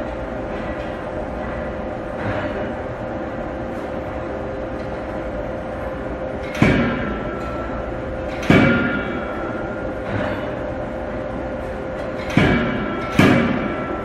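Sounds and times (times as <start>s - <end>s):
steady machine hum: 0.0s - 14.0s
forging hammer blows with metallic ring: 12.0s - 14.0s.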